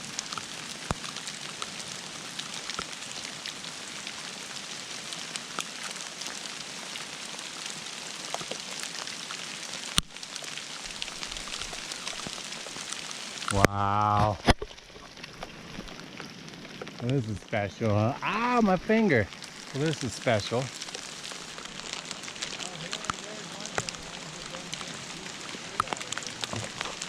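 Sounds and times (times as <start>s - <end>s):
hail falling: 0.0s - 27.0s.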